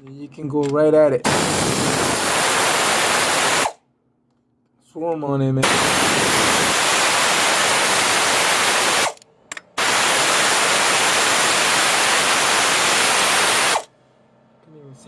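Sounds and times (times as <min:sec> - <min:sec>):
loud steady hiss: 0:01.3 - 0:03.8, 0:05.6 - 0:09.2, 0:09.8 - 0:13.9.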